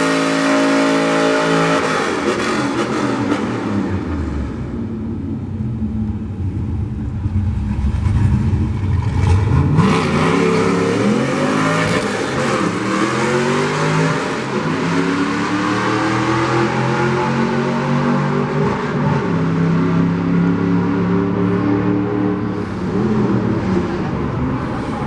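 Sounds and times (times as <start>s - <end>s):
car engine revving hard: 8.0s - 25.0s.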